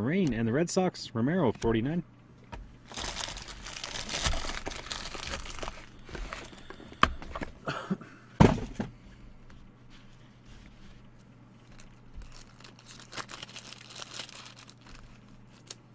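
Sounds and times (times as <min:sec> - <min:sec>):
plastic packaging crinkling and tearing: 0:02.9 - 0:06.6, 0:11.6 - 0:15.9.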